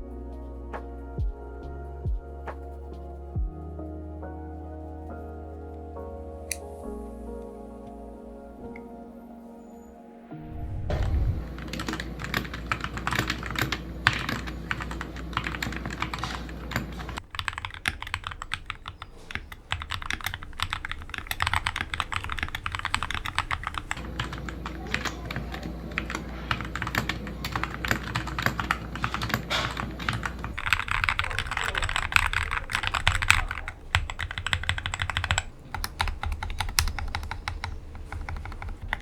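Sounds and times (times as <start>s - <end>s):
mechanical keyboard typing: 11.5s - 39.0s.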